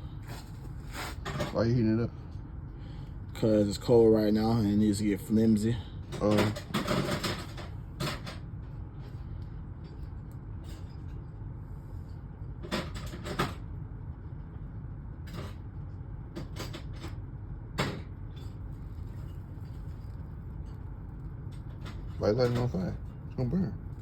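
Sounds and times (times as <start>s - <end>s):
steady low rumble: 13.6s - 24.0s.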